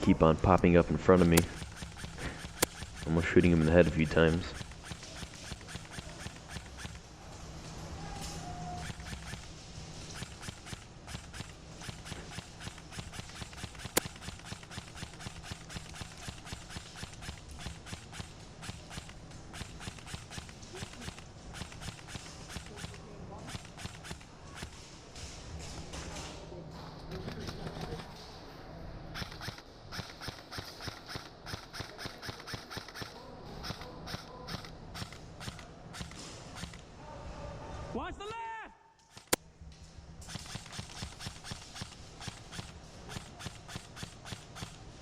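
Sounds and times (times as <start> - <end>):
steady outdoor noise: 0.0 - 45.0
sharp clicks and taps: 0.5 - 7.0, 10.1 - 24.8, 39.0 - 39.4
gear jostling: 0.6 - 26.4, 29.1 - 36.8
sharp crack: 1.2 - 7.0.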